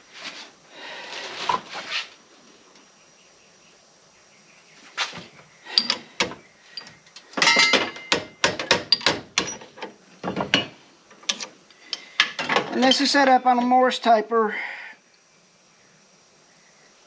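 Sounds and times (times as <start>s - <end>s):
metal tools clinking: 5.8s - 13.7s.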